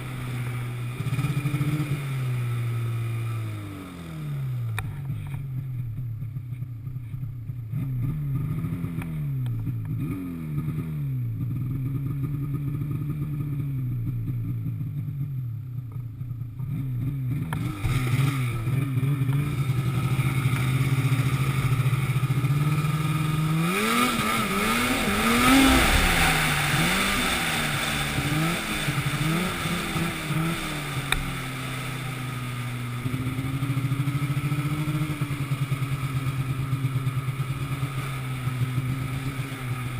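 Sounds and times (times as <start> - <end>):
engine revving: 0.0 - 5.4, 16.6 - 39.9
rushing noise: 21.0 - 35.9.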